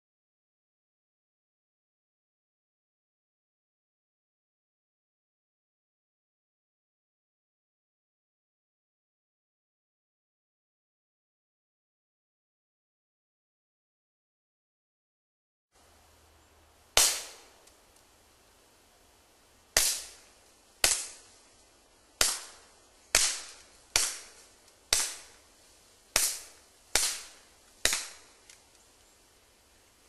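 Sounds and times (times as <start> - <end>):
suppressed pistol shots: 17.0 - 17.5, 26.2 - 28.3.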